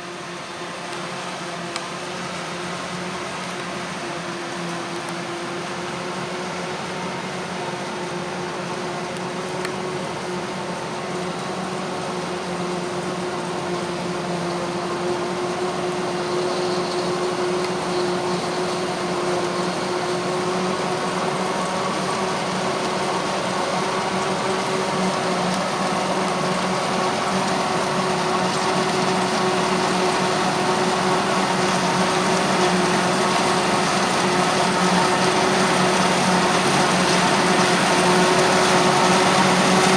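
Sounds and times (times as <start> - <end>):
heavy farm machinery droning: 9.8 - 39.9.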